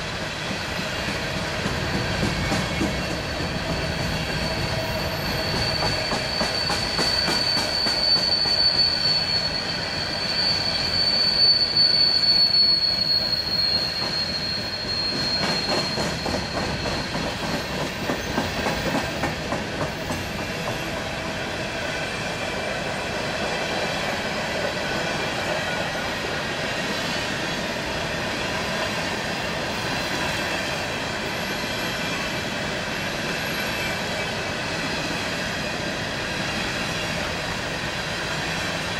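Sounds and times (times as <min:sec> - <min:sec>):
rumble of passing train cars: 0:00.0 - 0:38.9
high wheel squeal: 0:02.0 - 0:21.6.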